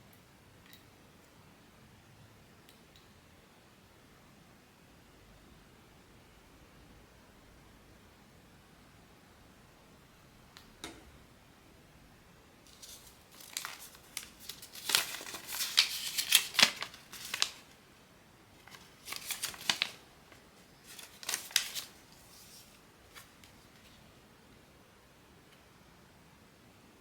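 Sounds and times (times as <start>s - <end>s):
packaging crinkling and tearing: 12.7s - 17.8s, 18.6s - 24.0s.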